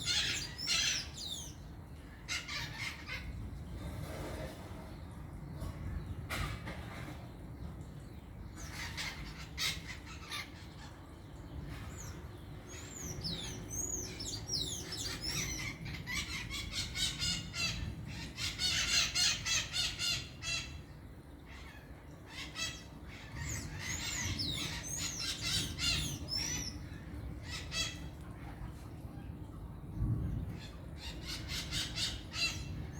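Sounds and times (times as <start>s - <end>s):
parakeets squawking: 0.0s - 1.6s, 2.2s - 3.5s, 8.6s - 20.9s, 21.5s - 28.1s, 30.6s - 32.9s.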